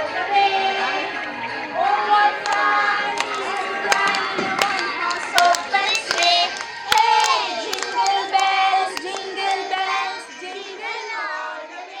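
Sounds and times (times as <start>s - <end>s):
children singing and shouting: 0.0s - 12.0s
sharp claps: 2.4s - 9.7s.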